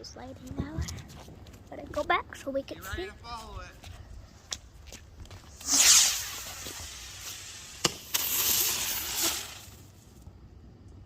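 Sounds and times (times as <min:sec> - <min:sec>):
firework crack: 0:04.4 - 0:10.4
firework hissing: 0:05.4 - 0:10.2.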